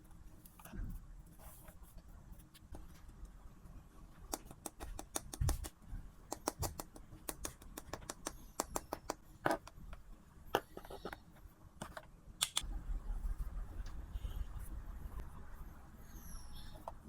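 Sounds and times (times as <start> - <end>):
sharp clicks and taps: 4.3 - 9.7, 11.8 - 12.7.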